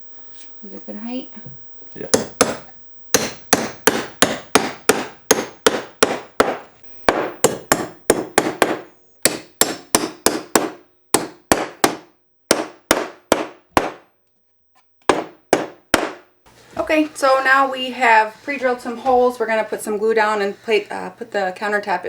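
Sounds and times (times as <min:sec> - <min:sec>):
hammer blows ringing: 0:02.1 - 0:14.1, 0:15.1 - 0:16.3.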